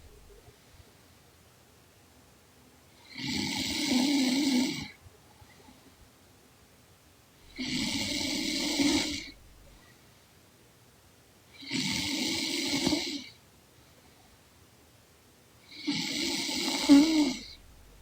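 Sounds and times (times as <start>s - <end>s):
woman snoring: 3.1s - 4.9s, 7.6s - 9.4s, 11.6s - 13.3s, 15.7s - 17.6s.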